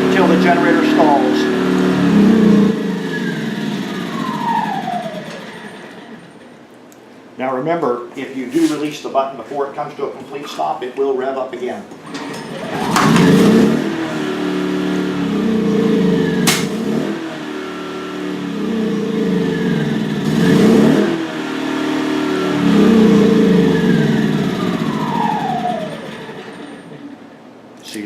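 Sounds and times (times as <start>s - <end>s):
generator engine surging: 0.0s - 6.7s, 12.1s - 27.5s
sharp click: 16.4s - 16.8s.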